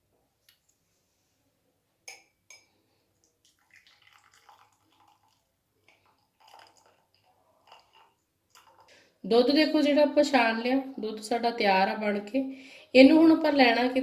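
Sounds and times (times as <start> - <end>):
milk trickling through strainer: 2.5 - 9.3.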